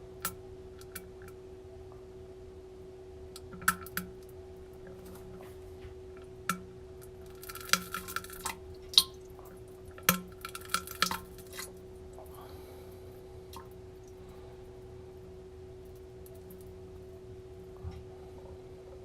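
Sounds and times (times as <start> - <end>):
steady hum: 0.0 - 19.0
wet drips and plops: 6.5 - 12.3.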